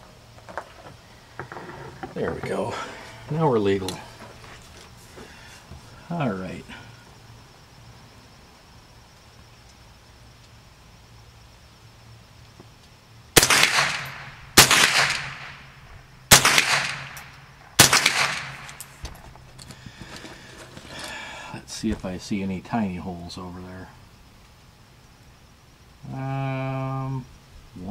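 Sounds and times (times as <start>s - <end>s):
rifle shots with echo: 13.4s - 18.9s.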